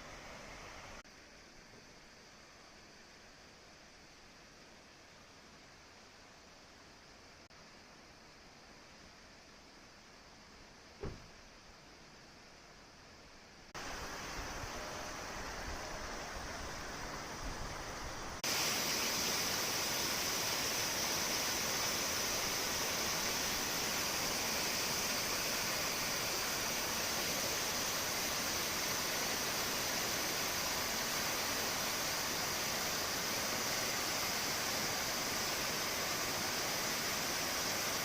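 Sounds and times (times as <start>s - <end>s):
flowing water rushing: 13.8s - 38.0s.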